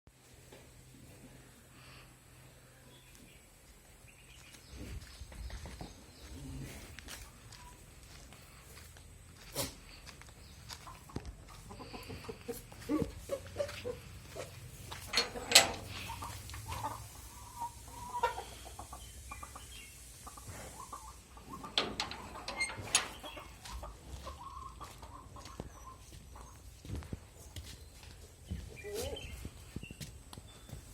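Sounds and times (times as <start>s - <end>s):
knocks and clatters: 15.1s - 16.1s, 21.7s - 23.4s.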